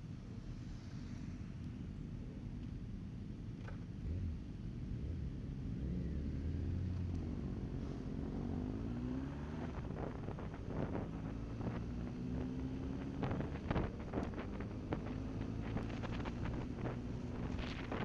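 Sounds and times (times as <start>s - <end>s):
wind noise on microphone: 9.5s - 18.0s
motorcycle engine running: 9.7s - 18.0s.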